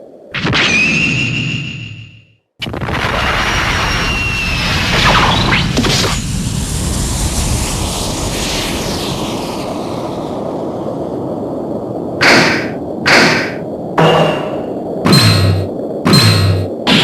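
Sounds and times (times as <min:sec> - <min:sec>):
noisy rumble: 0:12.1 - 0:17.0.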